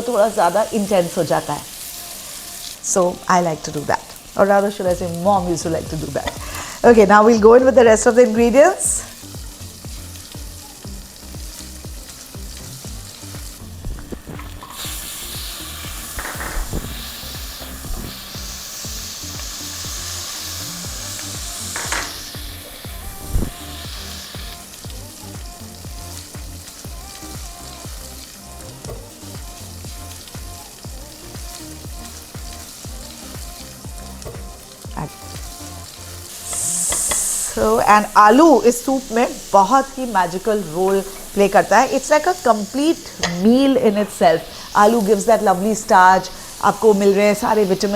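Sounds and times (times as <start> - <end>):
background music: 0.0 - 47.9
chicken sizzling in a pot: 0.0 - 47.9.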